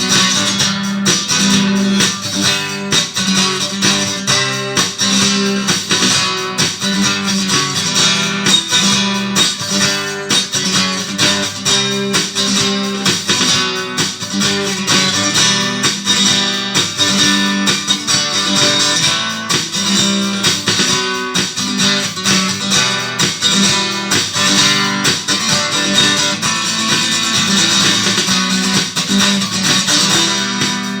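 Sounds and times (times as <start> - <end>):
guitar strummed in steady rhythm: 0.0 - 31.0.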